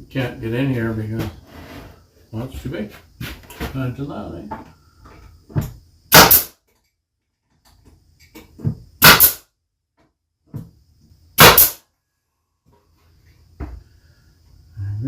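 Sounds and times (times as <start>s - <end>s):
nails hammered into plywood: 5.5s - 6.6s, 8.6s - 9.5s, 11.4s - 11.8s.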